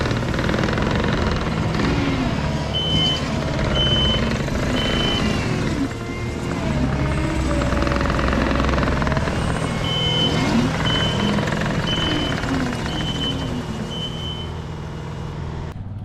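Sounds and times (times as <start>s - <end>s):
diesel engine under load: 0.0s - 16.0s
reversing alarm beeping: 2.7s - 6.3s, 9.6s - 14.6s.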